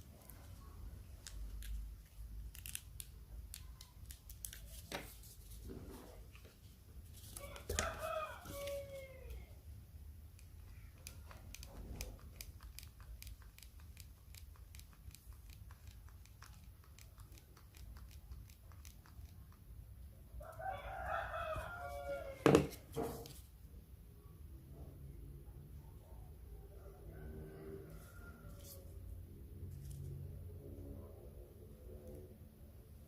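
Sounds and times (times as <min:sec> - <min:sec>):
rooster crowing: 0:07.4 - 0:09.6, 0:20.4 - 0:22.8, 0:26.7 - 0:29.0.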